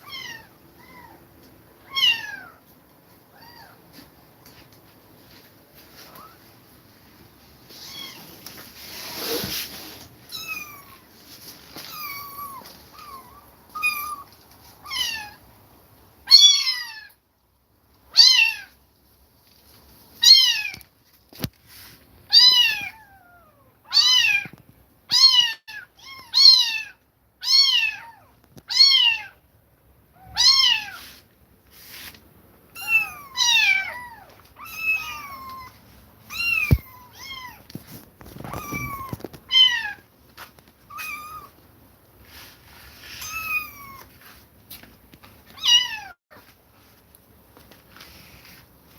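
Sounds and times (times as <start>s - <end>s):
kitten meowing: 10.3s - 11.0s, 11.9s - 15.4s, 30.2s - 31.0s, 32.8s - 37.6s, 38.4s - 40.0s, 40.9s - 41.6s, 43.2s - 44.1s, 45.6s - 46.2s.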